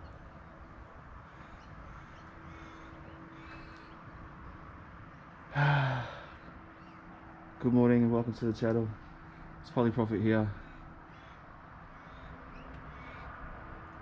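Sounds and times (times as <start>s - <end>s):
faint bird chirps: 1.2s - 7.2s
man sighing: 5.5s - 6.4s.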